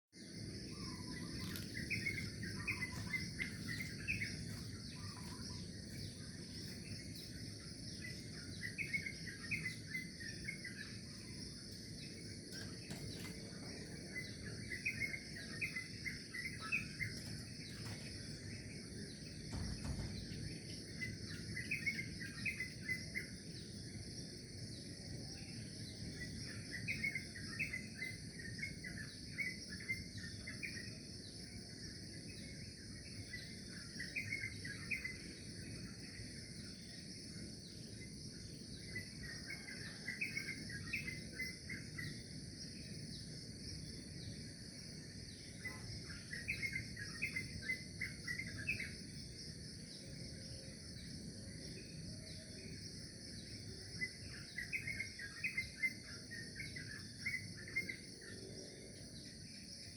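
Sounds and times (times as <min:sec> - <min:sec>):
birds chirping: 0:00.2 - 0:31.5
insects droning: 0:00.2 - 0:59.9.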